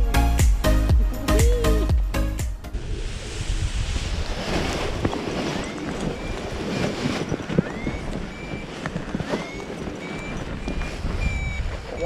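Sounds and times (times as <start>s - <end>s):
wind buffeting microphone: 2.6s - 12.0s
faint high beeps: 5.4s - 12.0s.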